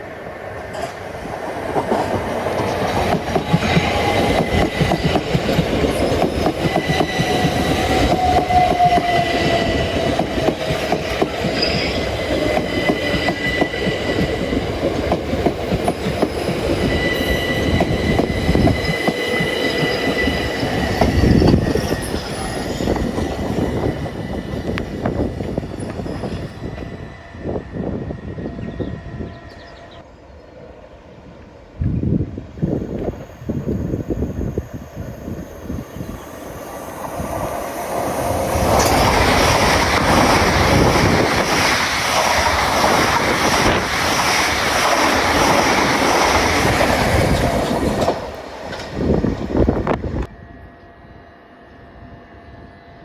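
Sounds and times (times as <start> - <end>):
high-pitched train whine: 0.0 - 53.0.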